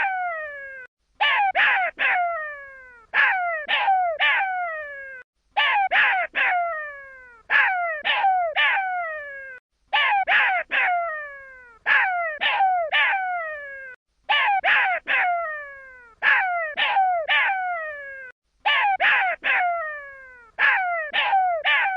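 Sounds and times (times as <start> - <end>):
jackal pup crying: 3.1 - 6.7, 7.5 - 11.1, 11.8 - 21.9.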